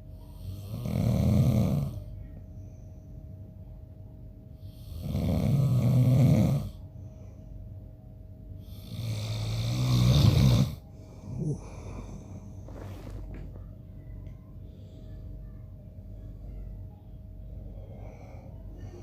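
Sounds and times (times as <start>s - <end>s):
man snoring: 0.4s - 2.0s, 4.7s - 6.8s, 8.6s - 12.3s.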